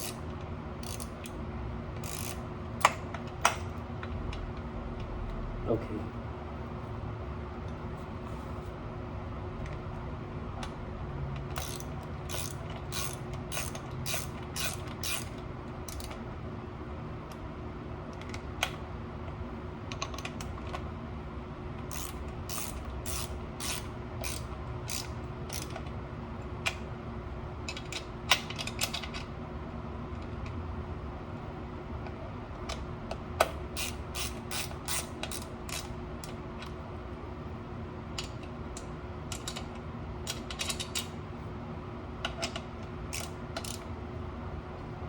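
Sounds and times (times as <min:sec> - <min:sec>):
ratchet wrench clicking: 0:00.0 - 0:00.2, 0:00.8 - 0:01.4, 0:02.0 - 0:03.0, 0:11.5 - 0:16.2, 0:21.9 - 0:25.8, 0:33.8 - 0:35.9, 0:43.1 - 0:43.8.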